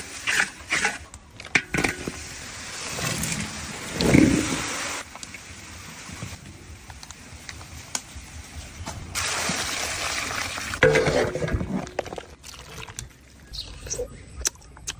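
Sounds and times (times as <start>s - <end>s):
liquid being poured: 10.1s - 13.2s.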